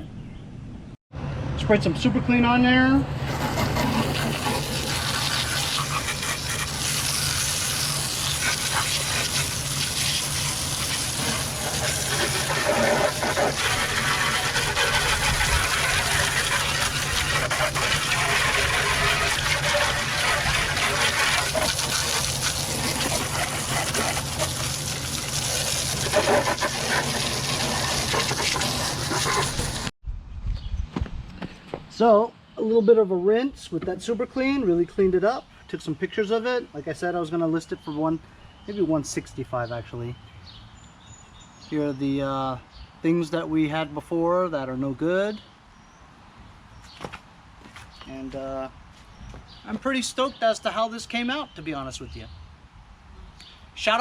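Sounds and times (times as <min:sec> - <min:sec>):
water spraying from a hose: 0:03.5 - 0:29.9.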